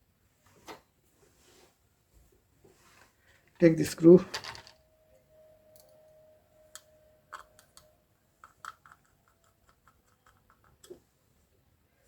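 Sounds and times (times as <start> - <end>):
small screw clicks: 7.3 - 11.0.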